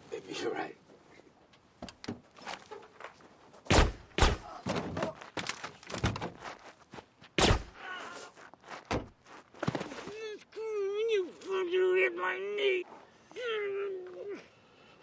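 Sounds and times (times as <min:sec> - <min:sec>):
heavy thumps of blows: 0:07.4 - 0:07.8, 0:08.9 - 0:09.9.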